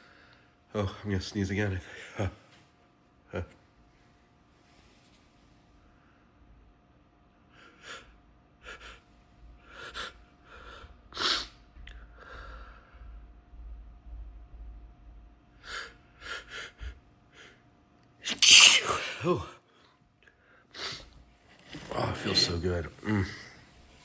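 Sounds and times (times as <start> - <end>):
man sniffing and gasping: 18.3 - 19.4
man sneezing: 18.3 - 19.5.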